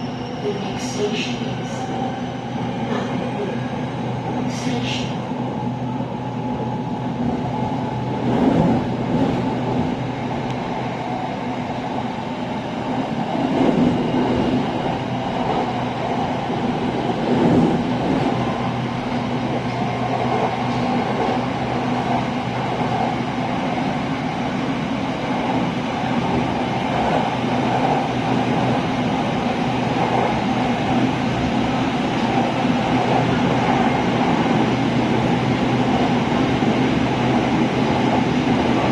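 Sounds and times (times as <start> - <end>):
train wheels rumbling on track: 0.0 - 38.9.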